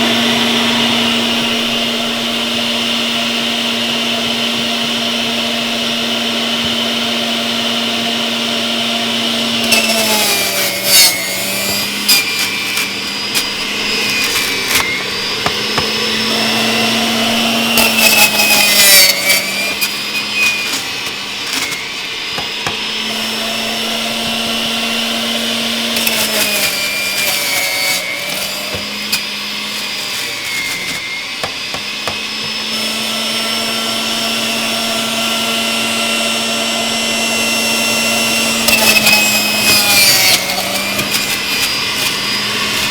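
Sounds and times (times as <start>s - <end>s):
juicer motor running: 0.0s - 42.9s.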